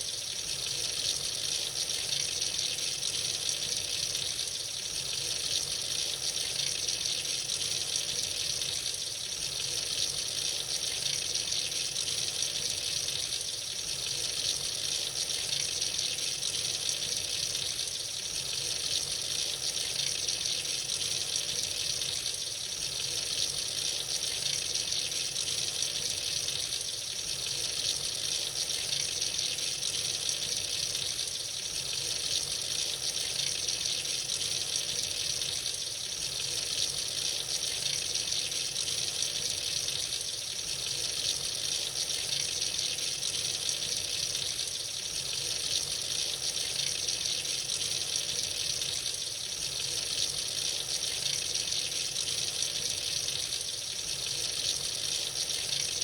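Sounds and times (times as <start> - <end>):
tap water running into sink: 18.5 - 56.0.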